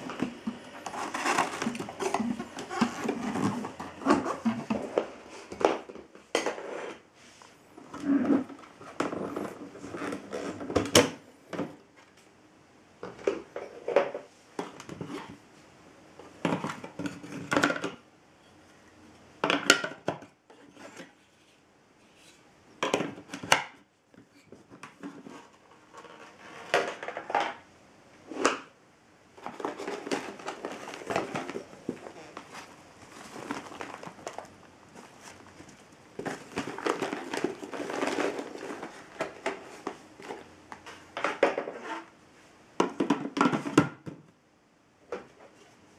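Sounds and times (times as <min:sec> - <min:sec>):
vacuum cleaner parts clattering: 0:00.0 - 0:07.0, 0:24.3 - 0:27.6, 0:29.4 - 0:42.1
rustling: 0:00.0 - 0:10.8, 0:29.4 - 0:42.6.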